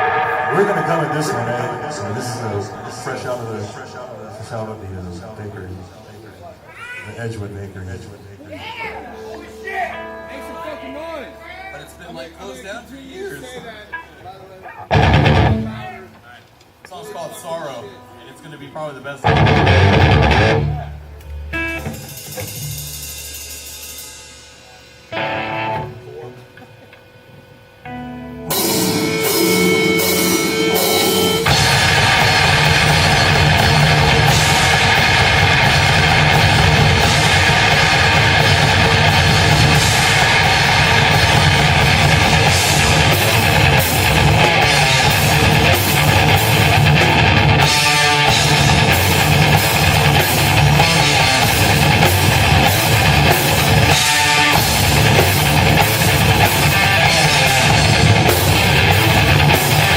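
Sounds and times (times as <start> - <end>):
rock band playing: 0.0 - 5.3, 9.1 - 12.6, 14.9 - 15.9, 19.2 - 26.1, 27.8 - 59.9
drum kit: 14.9 - 15.8, 19.3 - 25.9, 28.5 - 59.9.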